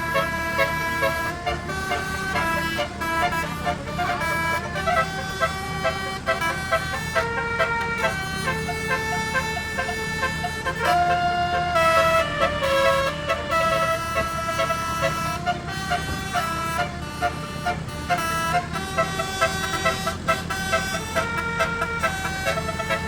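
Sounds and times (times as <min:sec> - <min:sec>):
air horn playing melody: 0:00.0 - 0:23.0
bus engine running: 0:00.0 - 0:23.0.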